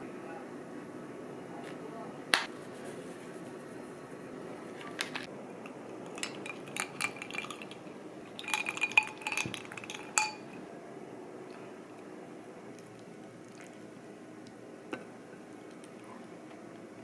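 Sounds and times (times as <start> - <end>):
utensils clinking against dishes: 6.0 - 10.6.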